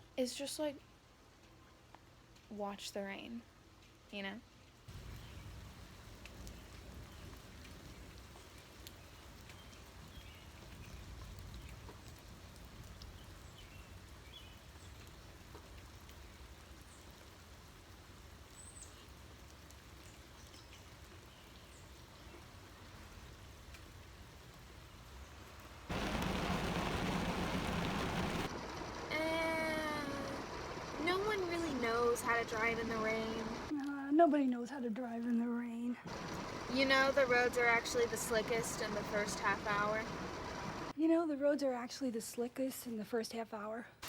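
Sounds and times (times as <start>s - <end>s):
rain falling: 3.6s - 33.7s, 36.1s - 41.0s.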